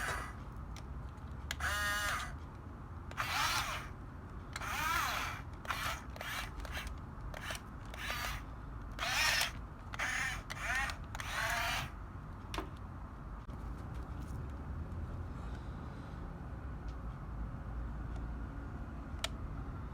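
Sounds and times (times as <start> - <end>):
small electric motors whining: 0.0 - 0.4, 1.5 - 2.4, 3.1 - 4.0, 4.6 - 12.0.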